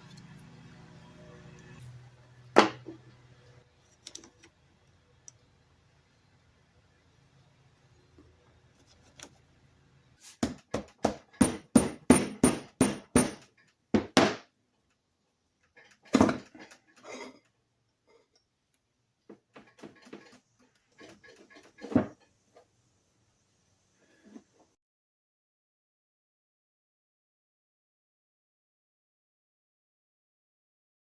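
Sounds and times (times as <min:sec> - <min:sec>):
hammer tapping on metal: 0:10.4 - 0:14.3.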